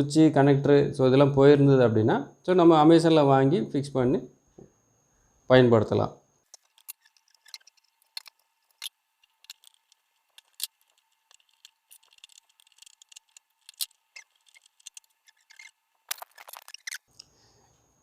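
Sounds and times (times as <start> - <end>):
small kettle parts clicking: 6.5 - 17.3.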